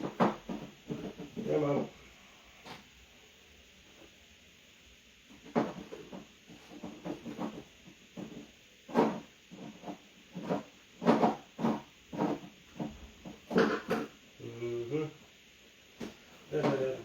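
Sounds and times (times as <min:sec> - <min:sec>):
hard parts knocking and clattering: 0:00.0 - 0:01.5, 0:05.4 - 0:14.2.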